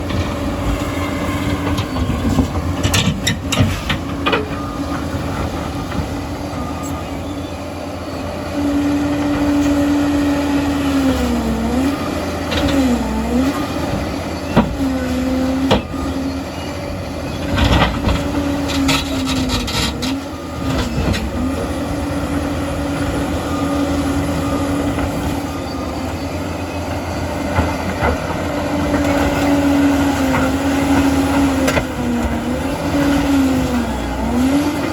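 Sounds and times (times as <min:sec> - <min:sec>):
metal clanks and knocks: 0:00.0 - 0:06.2
diesel engine running under load: 0:00.0 - 0:34.9.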